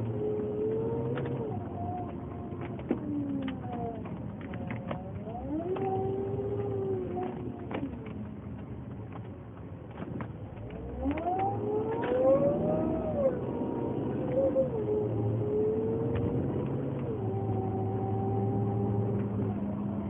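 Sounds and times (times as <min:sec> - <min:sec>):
car whirring whine: 0:00.0 - 0:20.0.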